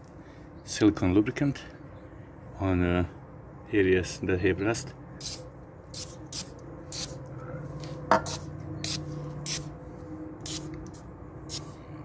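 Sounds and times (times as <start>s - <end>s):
aerosol spray hisses: 5.2s - 5.4s, 6.0s - 7.2s, 10.5s - 11.8s.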